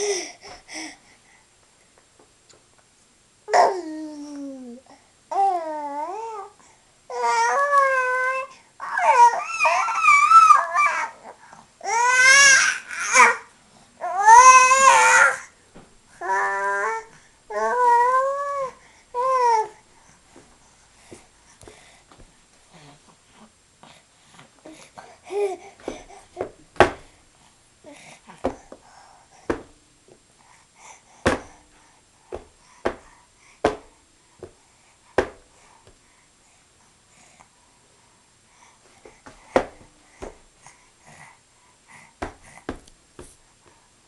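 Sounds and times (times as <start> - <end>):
baby cooing: 3.5 - 6.5
sharp knocks on a hard surface: 31.2 - 31.6, 32.4 - 34.6, 35.2 - 35.4.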